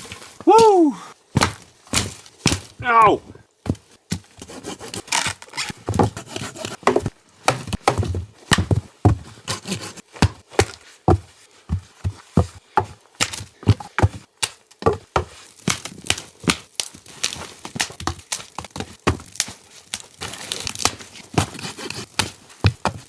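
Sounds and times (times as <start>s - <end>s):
wood chopping knocks: 6.8s - 9.2s.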